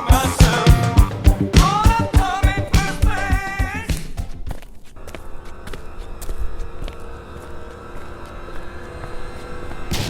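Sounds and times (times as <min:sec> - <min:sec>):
person singing: 0:00.0 - 0:04.1
steady drum beat: 0:00.0 - 0:04.4.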